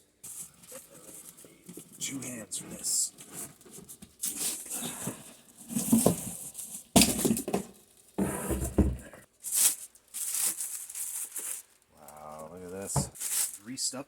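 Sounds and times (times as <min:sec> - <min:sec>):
cardboard and packing rustling: 0:00.2 - 0:13.8
heavy thud: 0:12.9 - 0:13.2.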